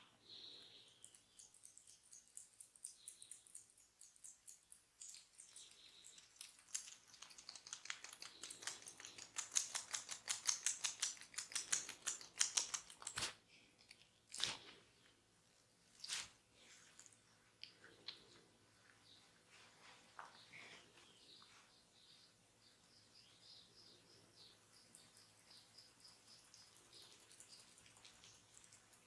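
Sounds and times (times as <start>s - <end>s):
hands stroking and patting head: 7.2s - 13.4s.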